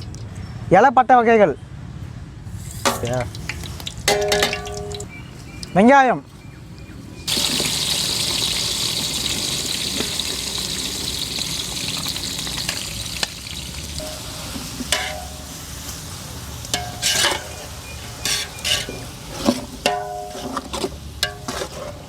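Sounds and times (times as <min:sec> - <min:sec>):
onions sizzling in hot oil: 0:02.6 - 0:05.1, 0:07.3 - 0:21.8
metal ladle knocking on pot: 0:04.1 - 0:05.1.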